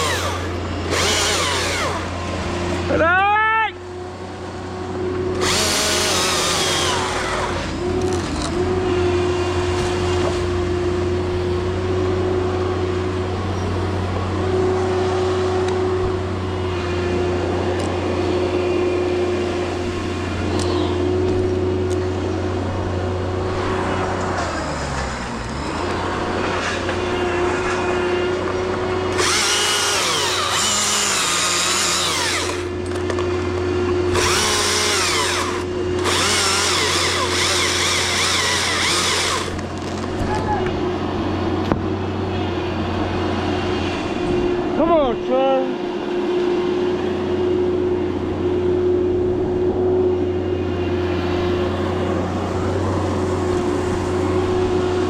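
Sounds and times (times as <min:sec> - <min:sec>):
chainsaw cutting wood: 0:00.0 - 0:02.8, 0:05.3 - 0:10.5, 0:29.0 - 0:33.3, 0:33.9 - 0:40.2
chainsaw running at high throttle: 0:00.0 - 0:02.8, 0:05.3 - 0:10.8, 0:27.4 - 0:32.8, 0:33.5 - 0:40.0.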